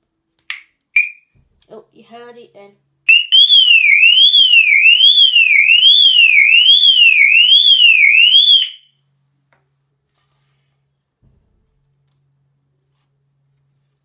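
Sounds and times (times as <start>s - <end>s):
alarm siren sweeping up and down: 3.1s - 8.9s.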